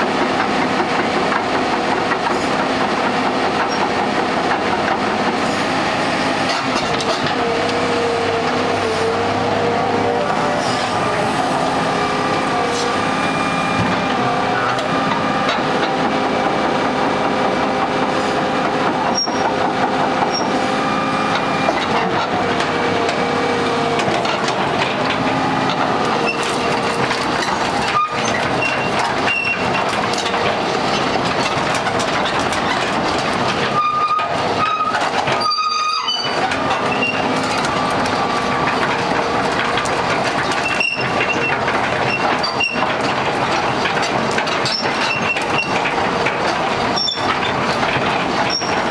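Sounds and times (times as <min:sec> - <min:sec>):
excavator working: 0:00.0 - 0:48.9
high metallic squealing: 0:19.1 - 0:19.5, 0:26.2 - 0:29.8, 0:33.6 - 0:38.7, 0:40.5 - 0:42.8, 0:44.6 - 0:45.8, 0:46.9 - 0:47.3, 0:48.4 - 0:48.9.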